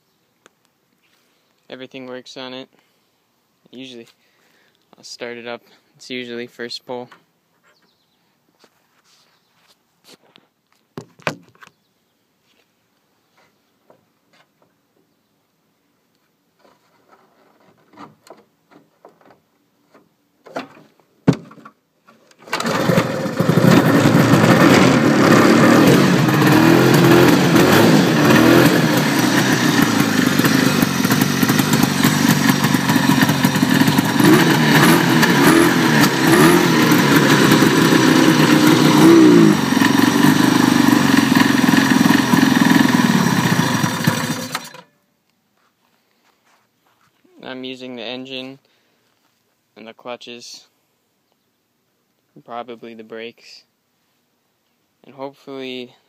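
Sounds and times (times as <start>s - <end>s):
recoil starter pull: 22.2s - 44.9s
snowmobile engine revving: 22.6s - 44.7s.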